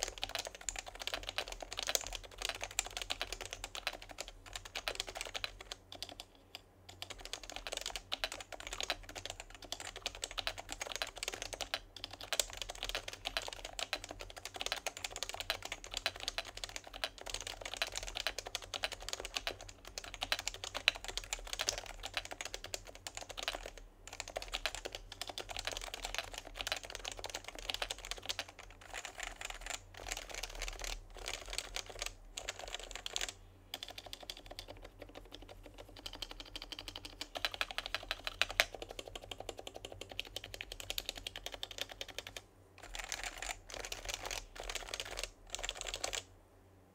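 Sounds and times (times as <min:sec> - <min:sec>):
fast keyboard typing: 0:00.0 - 0:46.3.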